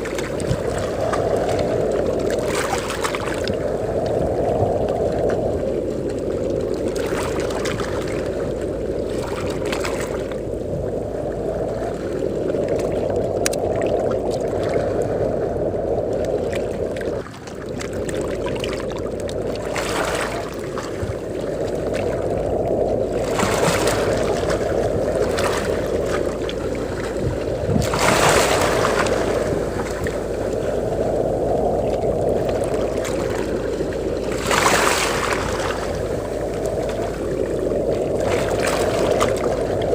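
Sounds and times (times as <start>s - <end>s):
sea waves washing onto beach: 0.0s - 39.9s
wind blowing: 0.0s - 39.9s.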